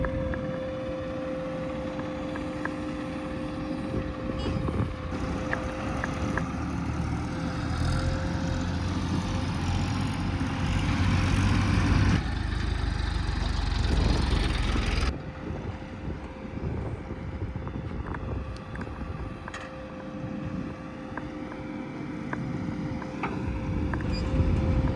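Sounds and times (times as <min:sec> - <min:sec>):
diesel engines running: 0:00.0 - 0:24.9.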